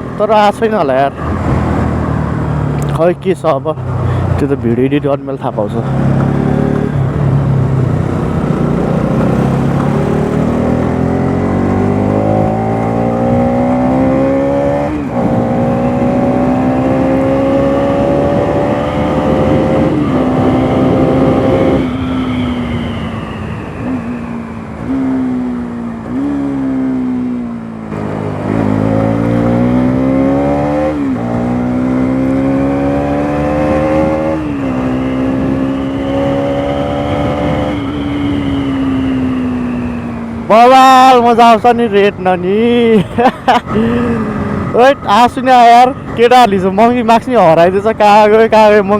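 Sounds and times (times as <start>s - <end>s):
motorcycle engine revving through gears: 0.0s - 3.0s, 5.8s - 40.5s.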